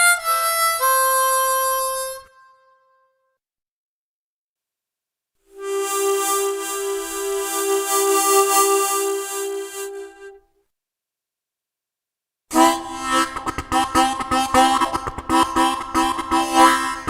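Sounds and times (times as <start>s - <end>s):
harmonica chord pulses: 0.0s - 2.8s, 5.5s - 10.4s, 12.5s - 17.0s.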